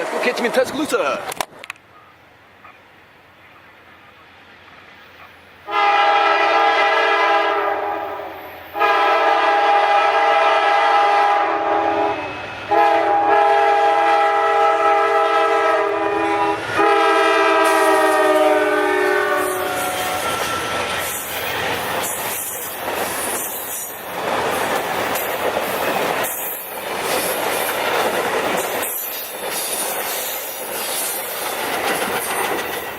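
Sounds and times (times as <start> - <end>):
locomotive air horn blasts: 5.7 - 20.3
train wheel clatter: 19.4 - 32.9.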